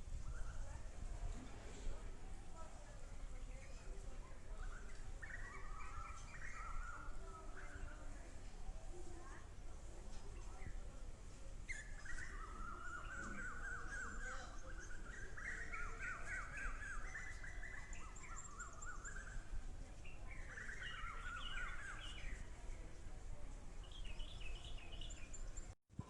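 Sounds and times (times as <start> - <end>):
birds chirping: 3.3 - 8.4, 9.2 - 25.8.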